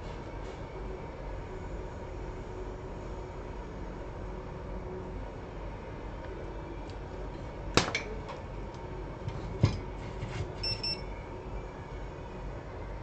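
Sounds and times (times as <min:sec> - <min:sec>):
steady background hum: 0:00.0 - 0:13.0
short high beeps: 0:10.6 - 0:11.0.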